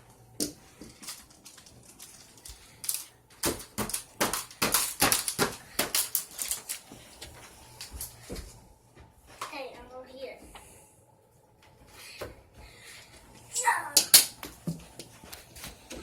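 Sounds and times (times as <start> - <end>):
plastic toys clacking together: 0.9 - 6.8.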